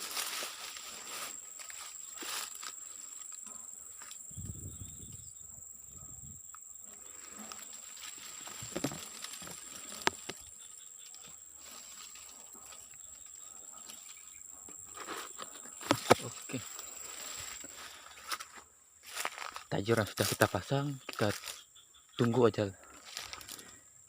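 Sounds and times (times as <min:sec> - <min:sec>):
rustling and handling noises: 0:00.0 - 0:03.4, 0:06.9 - 0:21.6, 0:23.0 - 0:23.8
high-pitched insect whine: 0:00.0 - 0:24.0.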